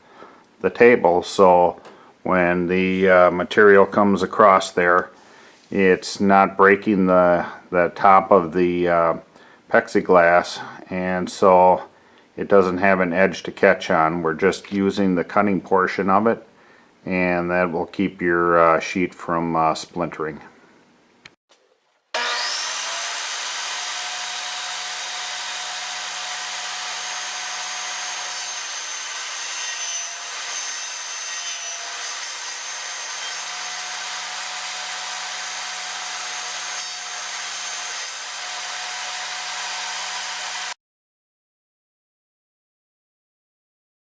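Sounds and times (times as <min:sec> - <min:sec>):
table saw cutting plastic sheet: 0:22.2 - 0:40.8.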